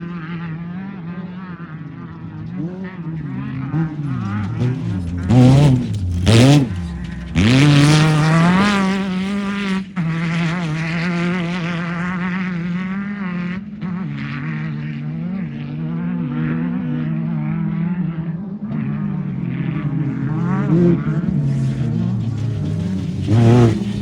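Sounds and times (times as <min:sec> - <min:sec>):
race car engine revving: 0:02.4 - 0:13.5, 0:19.4 - 0:24.0.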